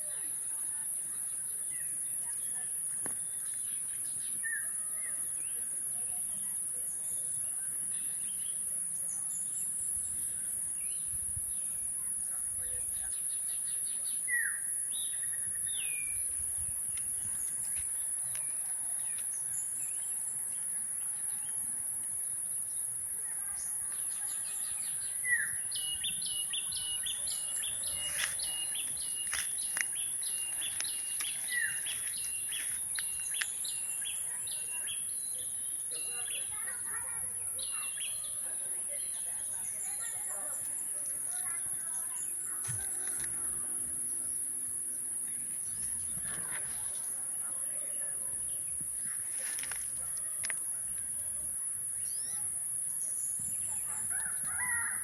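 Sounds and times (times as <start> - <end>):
birds calling: 24.3 - 39.0.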